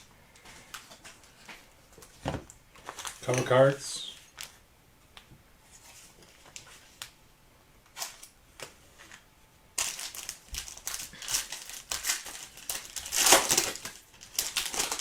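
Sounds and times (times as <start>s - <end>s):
card pack wrapper crinkling: 9.8s - 15.0s.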